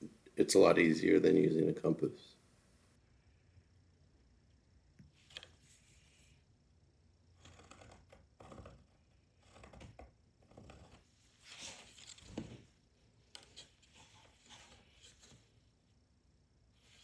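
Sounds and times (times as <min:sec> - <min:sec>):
pencil scratching on wood: 0:07.4 - 0:12.4, 0:13.4 - 0:15.5.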